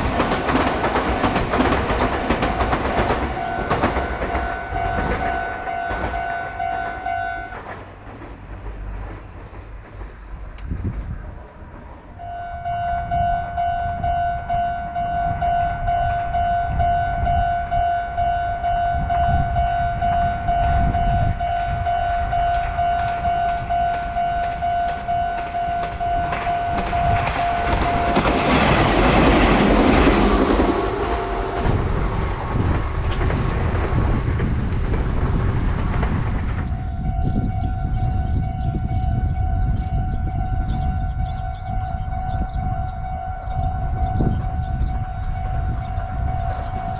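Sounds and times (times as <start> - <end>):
level crossing alarm clanging: 0.0 - 7.7, 12.2 - 31.8
electric train wheel noise: 0.0 - 46.9.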